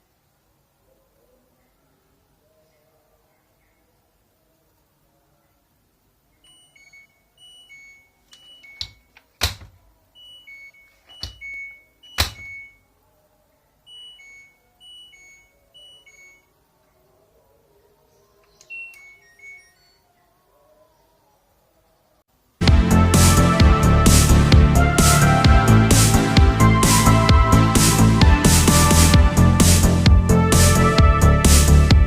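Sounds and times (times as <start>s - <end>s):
washing machine beep tunes: 6.4s - 9.1s, 10.1s - 12.9s, 13.9s - 16.5s, 18.6s - 20.1s.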